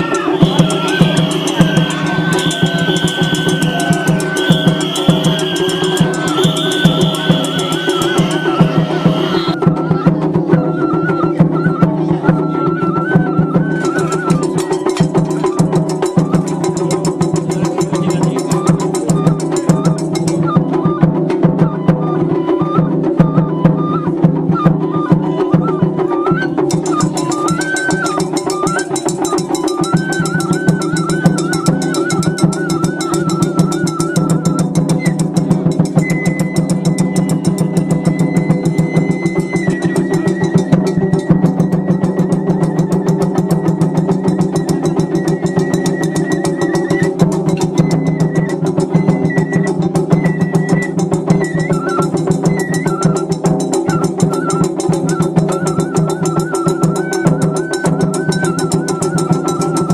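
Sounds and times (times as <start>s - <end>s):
high melody with trills: 0.0s - 9.7s
fast steady drumming: 0.0s - 59.9s.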